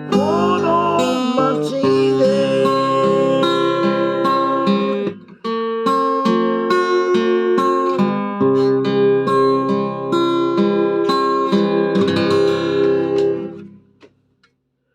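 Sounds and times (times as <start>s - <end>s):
acoustic guitar strumming chords: 0.0s - 14.1s.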